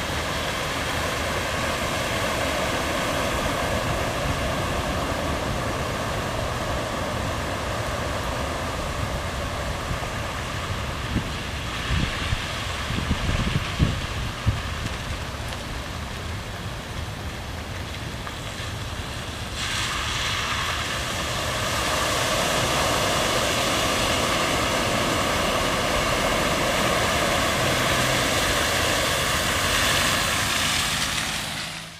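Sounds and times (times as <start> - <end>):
heavy rain: 0.0 - 31.9
wind: 0.0 - 31.9.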